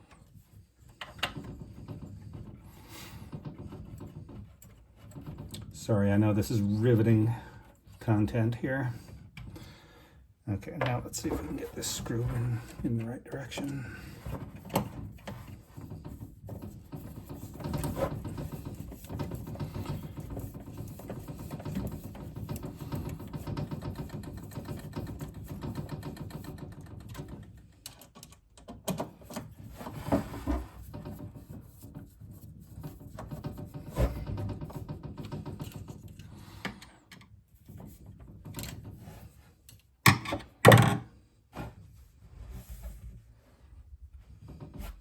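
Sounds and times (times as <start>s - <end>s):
knocks of parts handled: 40.0s - 41.1s.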